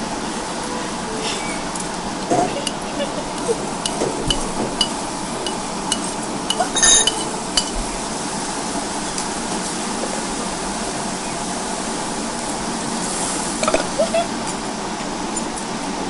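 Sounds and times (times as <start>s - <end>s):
tableware clinking: 3.8s - 7.8s, 13.6s - 14.0s.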